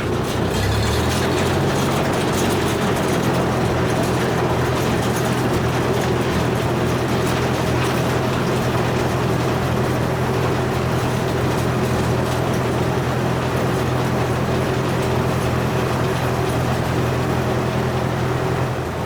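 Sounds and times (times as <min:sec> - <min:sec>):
engine running steadily: 0:00.0 - 0:19.0.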